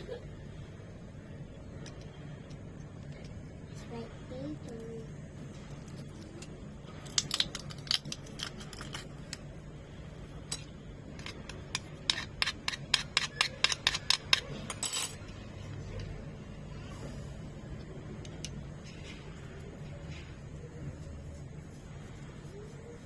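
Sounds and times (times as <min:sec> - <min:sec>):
utensil scrape: 0:10.6 - 0:15.2.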